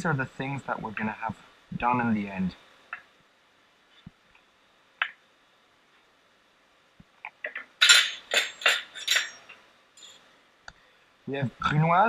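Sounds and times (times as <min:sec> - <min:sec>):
dishes clinking: 0:07.5 - 0:10.2.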